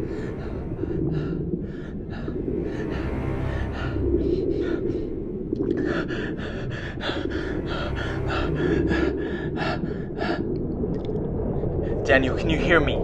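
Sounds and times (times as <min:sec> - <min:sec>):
diver breathing through regulator: 0:00.0 - 0:10.6
low underwater rumble: 0:00.0 - 0:13.0.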